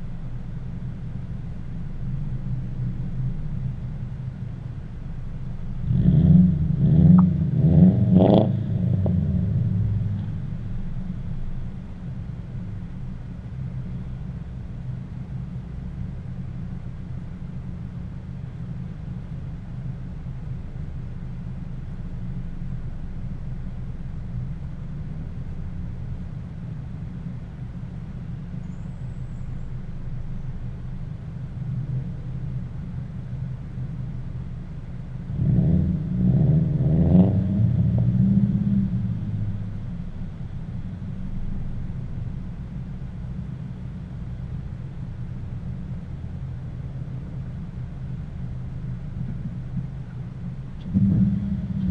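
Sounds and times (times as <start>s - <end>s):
cars driving on a road: 0.0s - 51.9s
car engine revving: 5.8s - 10.7s, 35.3s - 40.8s, 50.6s - 51.9s.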